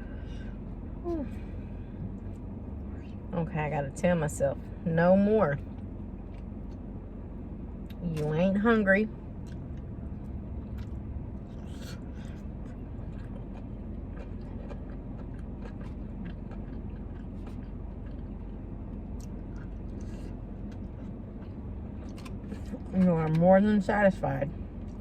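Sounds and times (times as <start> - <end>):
steady low hum: 0.0 - 25.0
person chewing food: 9.4 - 23.4.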